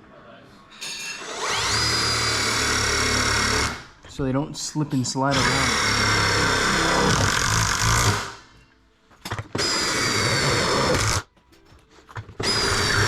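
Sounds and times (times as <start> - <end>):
power drill driving screws: 1.2 - 3.9, 5.3 - 8.4, 9.4 - 11.3, 12.4 - 13.0.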